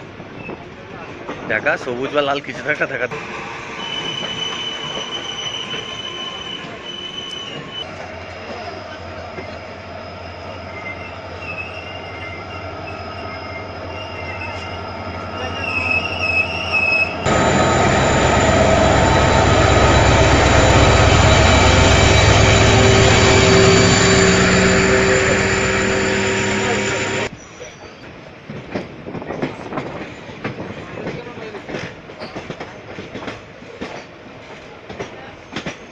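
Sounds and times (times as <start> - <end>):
train wheels squealing: 3.2 - 28.2
train running rumble: 6.6 - 27.3.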